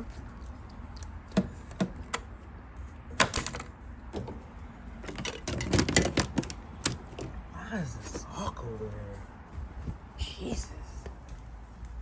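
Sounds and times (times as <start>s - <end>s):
hard objects clicking and clattering: 5.0s - 7.4s.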